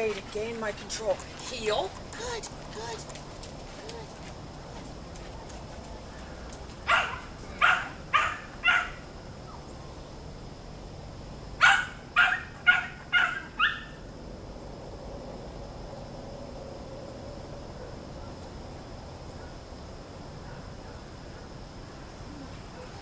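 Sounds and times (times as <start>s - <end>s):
dog barking: 6.9s - 9.0s, 11.6s - 14.0s, 20.4s - 21.4s, 22.7s - 23.0s.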